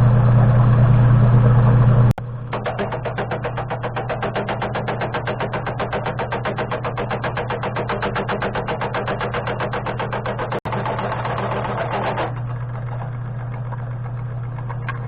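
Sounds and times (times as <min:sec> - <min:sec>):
mill motor humming: 0:00.0 - 0:15.0
milling cutter chattering on metal: 0:02.5 - 0:14.1.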